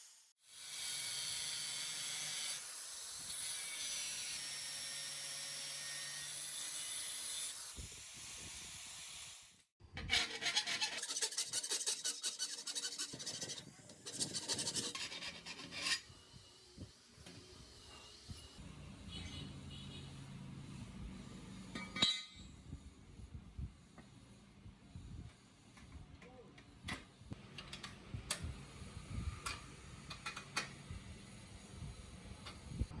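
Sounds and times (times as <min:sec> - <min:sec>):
rapid rubbing and scraping strokes: 0:10.1 - 0:16.0.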